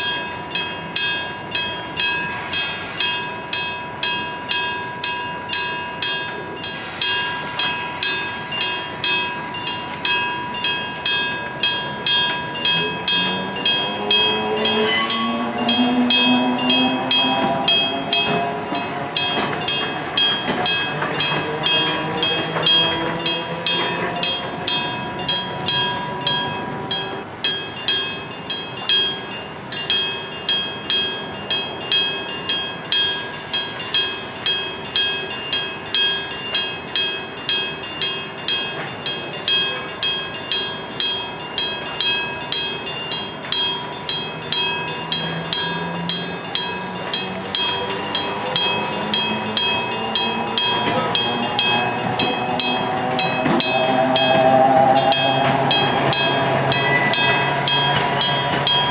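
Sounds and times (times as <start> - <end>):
level crossing bell ringing: 0.0 - 58.9
train whistle: 14.4 - 17.7, 51.3 - 58.9
train motor whine: 45.1 - 58.9.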